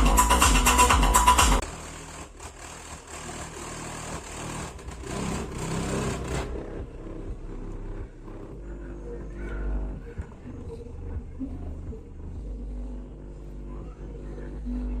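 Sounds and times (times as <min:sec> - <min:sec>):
car subwoofer deep bass: 0:00.0 - 0:15.0
faint pulsing beat: 0:06.5 - 0:15.0.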